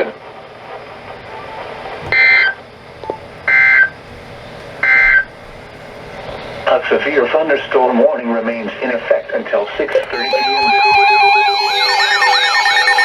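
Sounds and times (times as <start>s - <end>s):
low radio hiss: 0.0s - 11.0s
raspy warbling data bursts: 10.1s - 13.0s.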